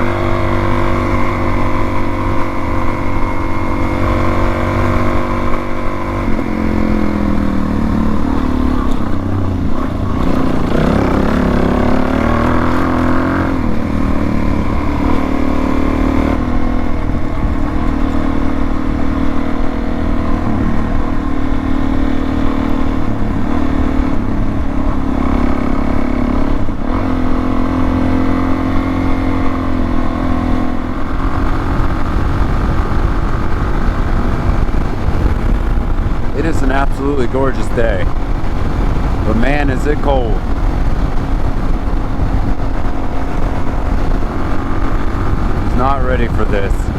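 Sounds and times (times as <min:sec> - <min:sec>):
motorcycle engine cruising: 0:00.0 - 0:46.9.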